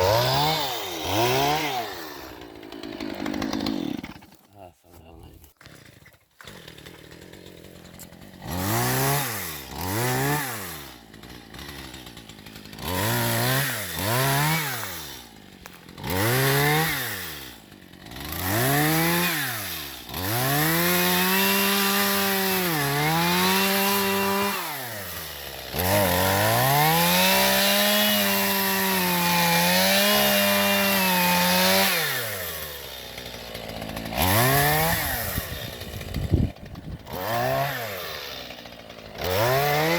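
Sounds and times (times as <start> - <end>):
chainsaw revving and cutting wood: 0.0 - 39.9.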